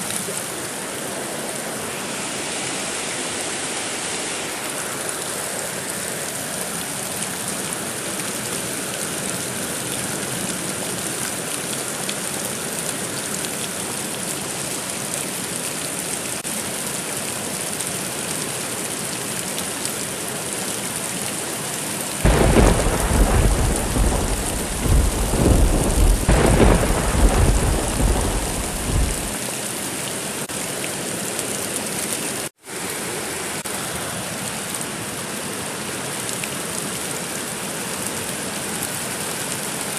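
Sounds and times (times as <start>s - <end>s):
heavy rain: 0.0s - 39.9s
rumble of thunder: 22.3s - 29.4s.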